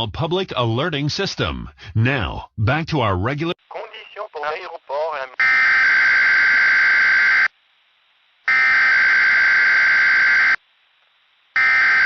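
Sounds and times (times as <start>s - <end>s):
harsh buzzing data bursts: 3.4s - 7.8s, 8.4s - 10.9s, 11.5s - 12.0s.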